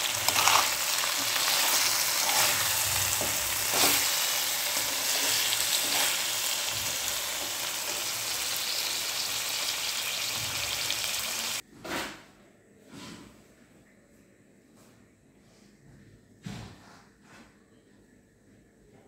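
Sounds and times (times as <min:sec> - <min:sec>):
fish curry sizzling in a pan: 0:00.0 - 0:11.6.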